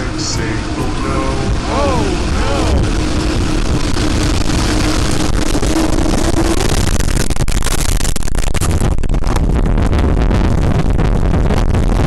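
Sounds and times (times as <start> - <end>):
held low tone: 0.0 - 6.1
loud steady rushing noise: 0.0 - 12.0
irregular crackling: 3.8 - 9.7.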